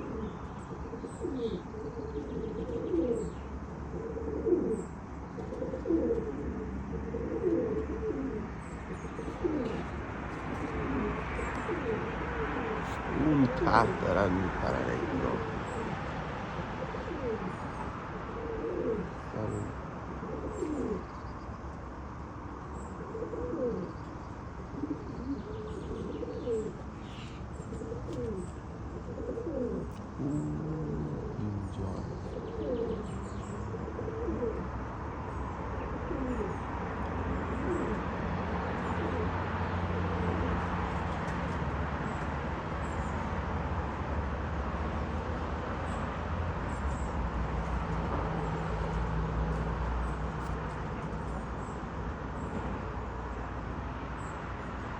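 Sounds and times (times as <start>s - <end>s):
small birds chirping: 0.0s - 3.6s, 7.2s - 16.2s, 16.8s - 21.6s, 22.6s - 43.5s, 44.9s - 53.4s
pigeons cooing: 0.0s - 21.2s, 22.8s - 53.1s
steady low hum: 28.9s - 34.0s.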